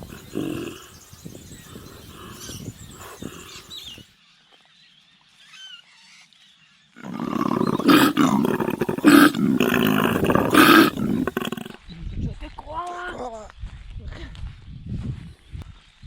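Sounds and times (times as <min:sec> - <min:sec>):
koala bellowing: 0:00.0 - 0:01.0, 0:07.0 - 0:11.8.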